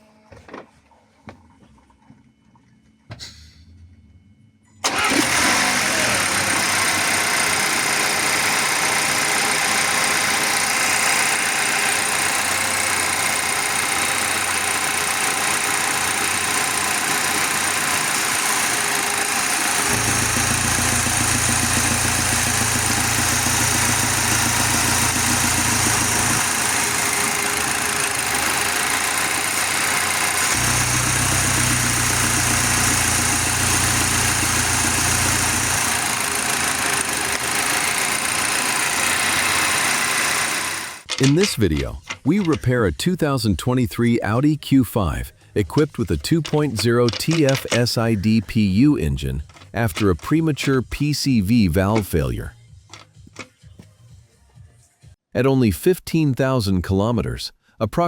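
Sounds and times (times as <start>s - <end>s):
car engine idling: 4.8s - 41.1s.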